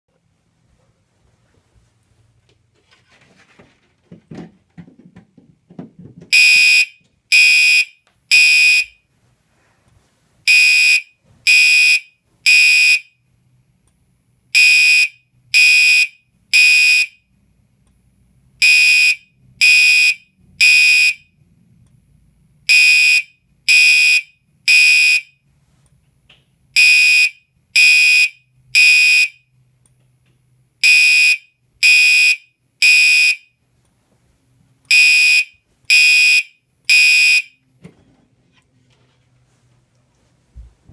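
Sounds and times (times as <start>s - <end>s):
faint rustling: 0.3s - 6.3s, 37.8s - 40.9s.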